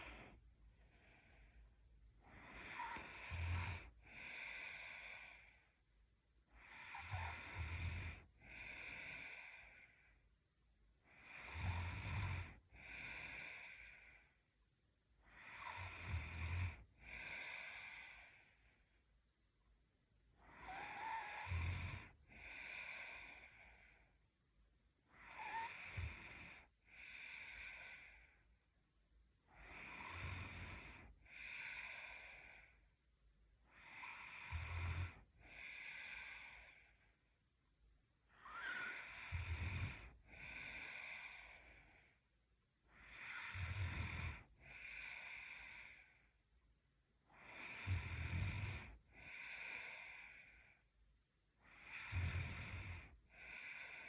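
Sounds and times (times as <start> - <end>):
woman snoring: 2.2 - 5.8, 6.5 - 9.9, 11.0 - 14.3, 15.2 - 18.8, 20.4 - 24.0, 25.1 - 28.4, 29.5 - 32.8, 33.6 - 37.1, 38.2 - 42.1, 42.8 - 46.3, 47.3 - 50.7, 51.6 - 54.0.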